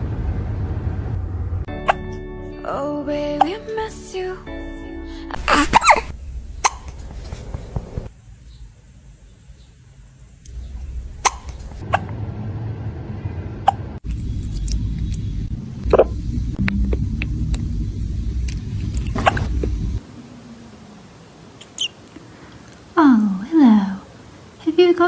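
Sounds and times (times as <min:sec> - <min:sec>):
low rumble: 0:00.0 - 0:02.6, 0:05.1 - 0:08.9, 0:10.5 - 0:20.9.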